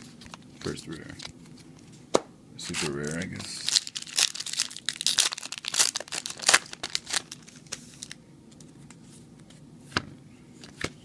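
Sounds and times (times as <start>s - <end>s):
foil wrapper crinkling and tearing: 2.7s - 8.2s.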